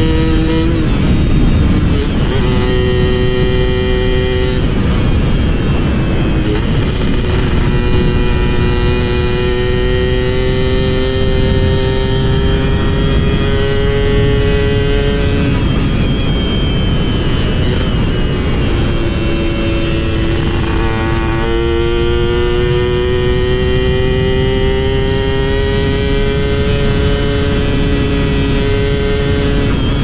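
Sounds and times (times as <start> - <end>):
two-stroke motorcycle engine: 0.0 - 30.0.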